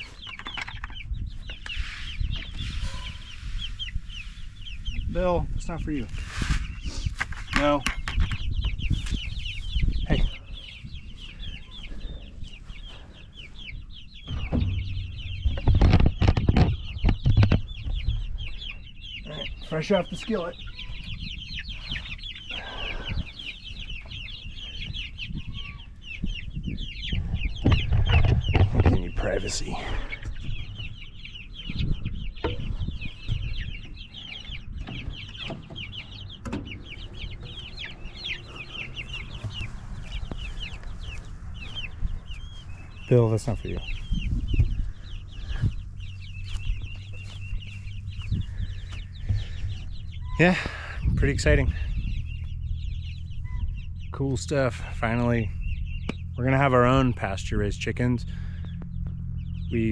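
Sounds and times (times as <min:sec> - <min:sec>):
chicks peeping: 0:00.0 - 0:59.9
sharp knocks and thumps: 0:14.2 - 0:18.6, 0:32.4 - 0:33.6.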